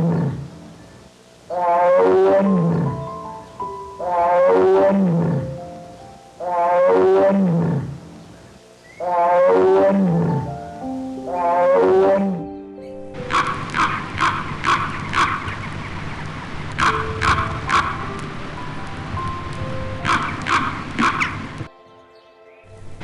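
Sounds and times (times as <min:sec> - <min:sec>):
big cat roaring: 0:00.0 - 0:00.5, 0:01.5 - 0:03.1, 0:04.0 - 0:05.5, 0:06.4 - 0:08.0, 0:09.0 - 0:10.5, 0:11.3 - 0:12.5
background music with held notes: 0:01.5 - 0:15.1, 0:16.6 - 0:23.0.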